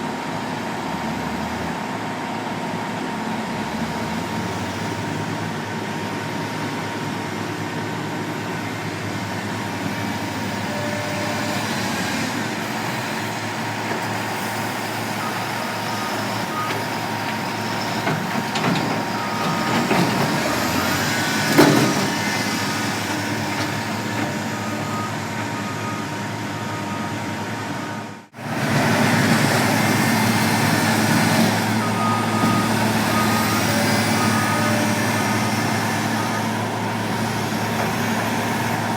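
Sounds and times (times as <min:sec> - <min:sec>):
construction machinery engine running: 0:00.0 - 0:38.9
reversing alarm beeping: 0:14.6 - 0:28.2, 0:31.2 - 0:37.2.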